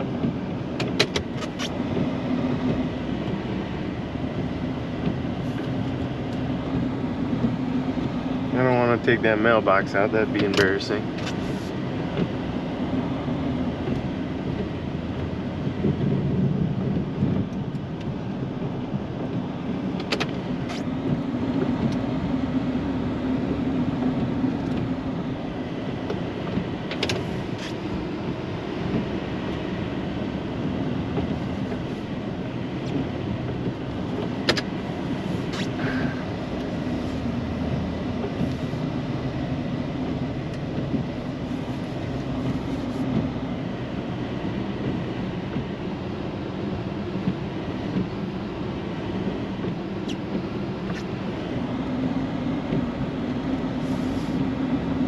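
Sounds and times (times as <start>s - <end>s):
plow pushing wet snow: 0.0s - 55.0s
truck engine droning: 31.0s - 43.6s.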